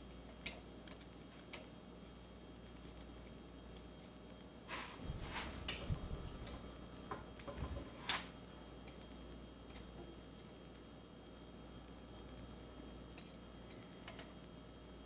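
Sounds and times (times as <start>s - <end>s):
small metal parts clicking: 8.8s - 10.5s.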